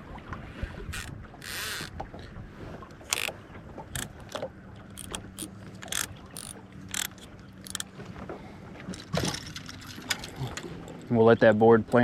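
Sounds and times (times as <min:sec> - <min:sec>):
fishing reel clicker ticking: 0:03.1 - 0:03.3, 0:03.9 - 0:07.9.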